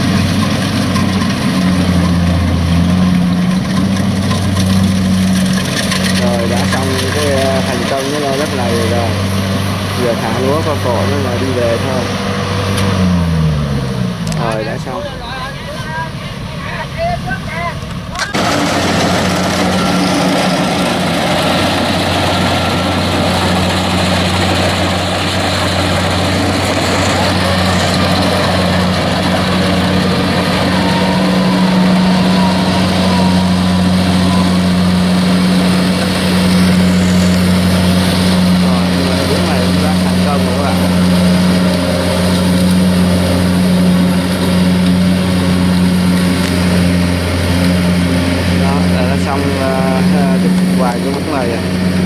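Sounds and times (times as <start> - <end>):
combine harvester engine running: 0.0 - 52.0.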